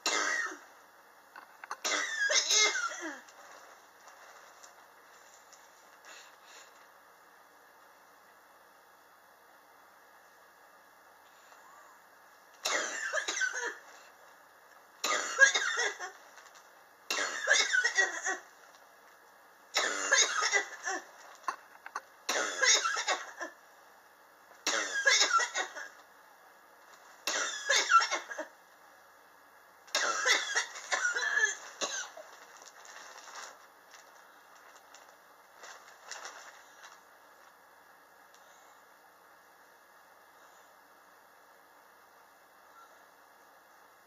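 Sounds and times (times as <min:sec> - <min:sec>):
person coughing: 0:00.0 - 0:00.6, 0:01.6 - 0:03.3, 0:12.7 - 0:13.8, 0:15.0 - 0:16.2, 0:17.1 - 0:18.5, 0:19.8 - 0:23.6, 0:24.7 - 0:26.0.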